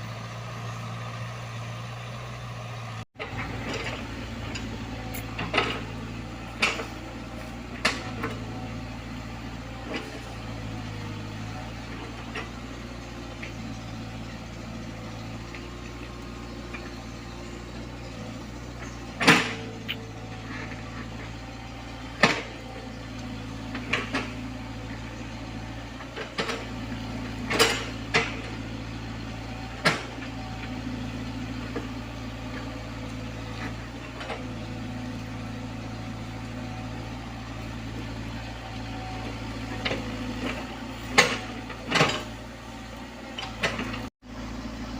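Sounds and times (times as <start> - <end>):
diesel engine humming: 0.0 - 44.9.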